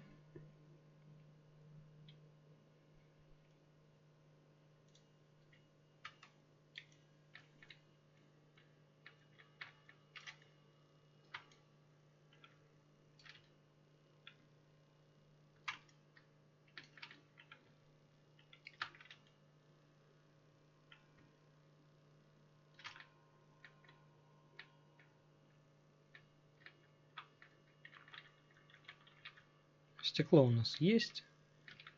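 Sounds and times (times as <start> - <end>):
low electrical hum: 0.0 - 31.9
computer mouse clicks: 4.9 - 10.6, 11.2 - 11.7, 12.3 - 12.6, 13.2 - 13.6, 14.2 - 14.5, 15.6 - 17.8, 18.4 - 19.4, 20.8 - 21.3, 22.7 - 24.0, 26.1 - 29.5, 31.6 - 31.9.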